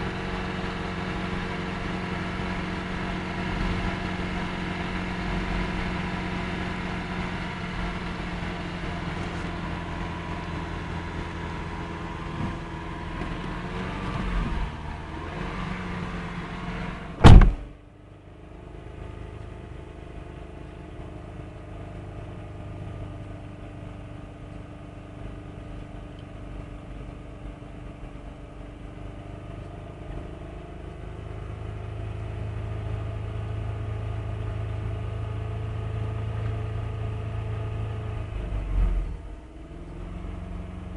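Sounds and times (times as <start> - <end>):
car engine idling: 0.0 - 40.9
loud sharp thump: 17.2 - 17.7.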